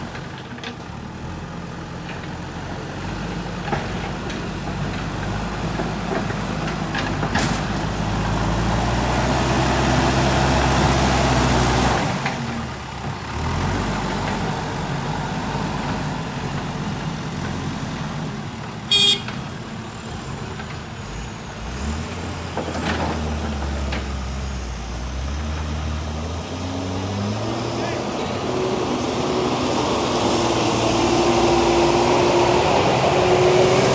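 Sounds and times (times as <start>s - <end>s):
diesel engine running under load: 0.0s - 33.9s
short horn toot: 18.9s - 19.4s.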